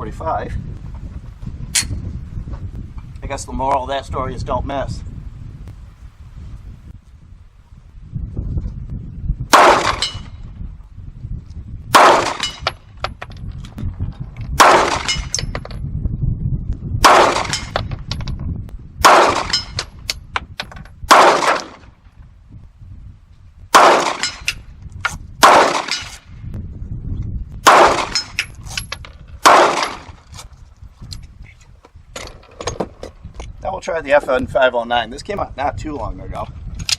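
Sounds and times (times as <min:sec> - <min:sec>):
pistol shots: 0:09.5 - 0:10.2, 0:11.9 - 0:12.6, 0:14.6 - 0:15.4, 0:17.0 - 0:17.8, 0:19.0 - 0:19.8, 0:21.1 - 0:21.8, 0:23.7 - 0:24.6, 0:25.4 - 0:26.2, 0:27.6 - 0:28.4, 0:29.4 - 0:30.2.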